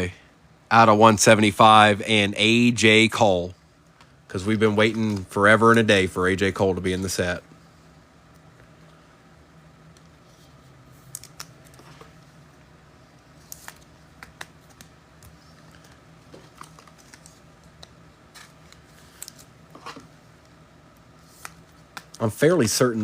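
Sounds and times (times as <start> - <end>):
low steady hum: 0.0 - 23.0
trading cards clicking and tapping: 13.4 - 20.1, 21.3 - 22.8.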